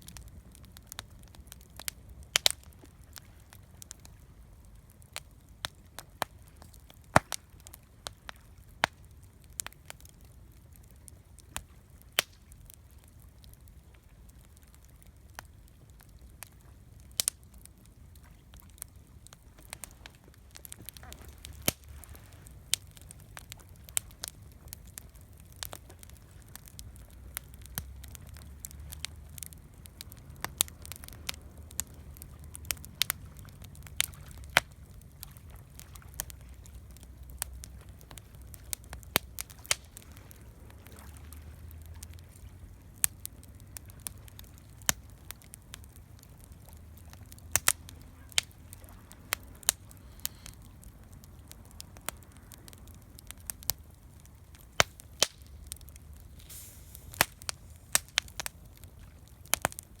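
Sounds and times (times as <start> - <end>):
campfire crackling: 0.0 - 60.0
low steady rumble: 0.0 - 60.0.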